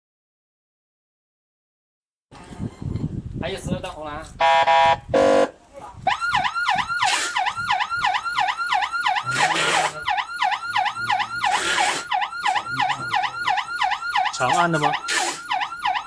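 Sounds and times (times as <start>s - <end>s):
police siren fast sweep: 6.1s - 16.0s
bursts of rushing hiss: 11.5s - 12.1s.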